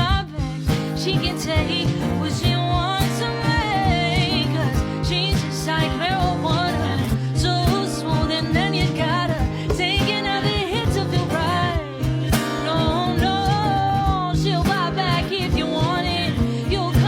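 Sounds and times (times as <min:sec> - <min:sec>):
drum beat: 0:00.0 - 0:05.5, 0:08.6 - 0:14.9
person singing: 0:00.0 - 0:17.0.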